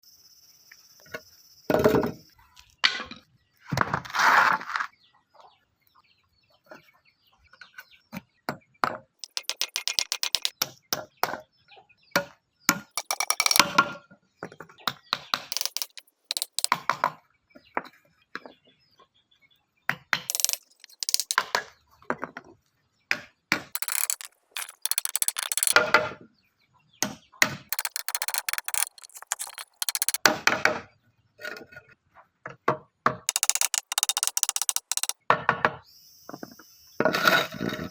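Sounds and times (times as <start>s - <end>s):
noisy bursts of tool work: 9.2s - 10.5s, 13.0s - 13.6s, 23.8s - 25.8s, 27.7s - 30.2s
quick even ticks: 9.2s - 10.5s, 13.0s - 13.6s, 15.5s - 16.7s, 20.3s - 21.4s, 23.8s - 25.8s, 27.7s - 30.2s, 33.3s - 35.2s.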